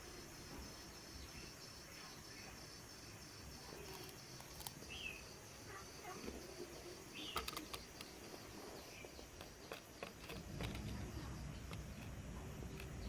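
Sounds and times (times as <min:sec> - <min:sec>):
steady high hiss: 0:00.0 - 0:13.0.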